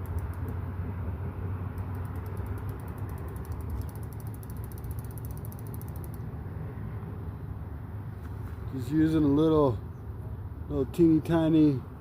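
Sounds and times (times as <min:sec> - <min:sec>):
fishing reel ticking: 0:01.8 - 0:06.2.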